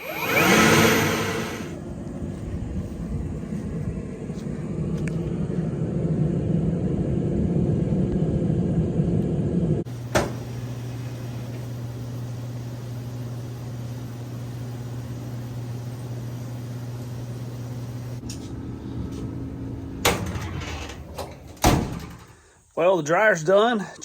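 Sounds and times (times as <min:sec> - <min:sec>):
higher hum: 0:00.0 - 0:20.1
clothes dryer motor hum: 0:00.0 - 0:22.2
dryer click: 0:10.1 - 0:10.5.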